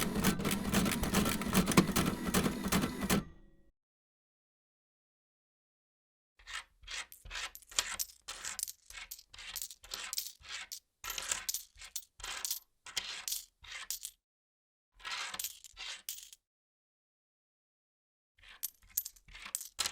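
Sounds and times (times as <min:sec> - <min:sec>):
money being counted by hand: 0:00.0 - 0:03.5.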